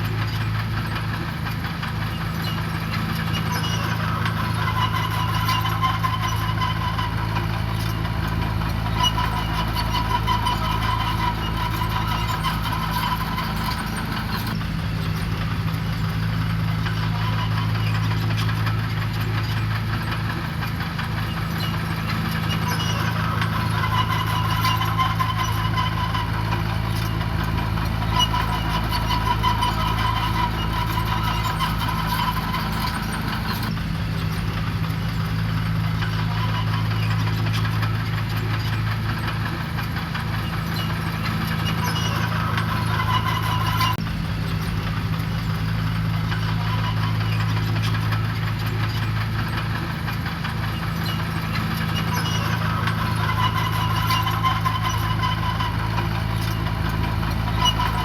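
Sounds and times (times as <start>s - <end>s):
diesel engine of heavy machinery: 0.0s - 58.0s.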